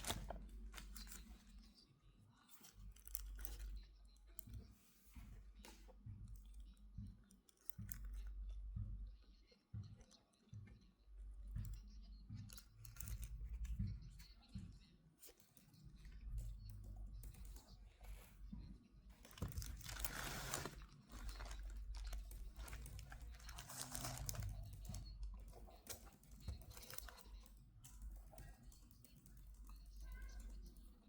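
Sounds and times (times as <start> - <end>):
packaging crinkling: 0.0 - 1.5, 19.2 - 25.1.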